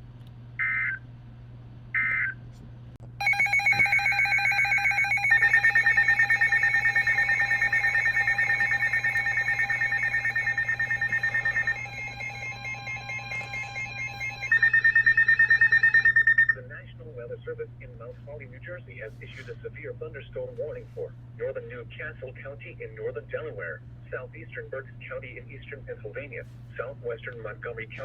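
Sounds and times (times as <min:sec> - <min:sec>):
electronic data bursts: 0:03.2 - 0:16.6
pulsing electronic alert tone: 0:03.2 - 0:16.6.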